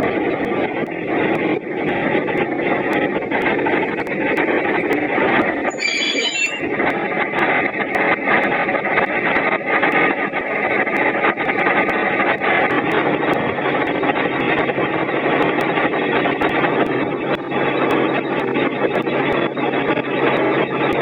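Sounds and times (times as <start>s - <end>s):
metal on metal squeal: 5.7s - 6.6s.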